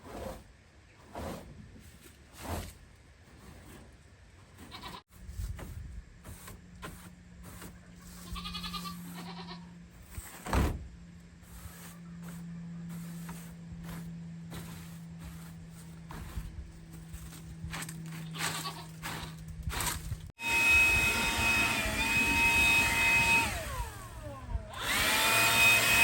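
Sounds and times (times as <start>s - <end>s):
goat bleating: 4.7s - 5.0s, 8.0s - 9.8s, 18.2s - 19.4s
steady low hum: 5.1s - 25.2s.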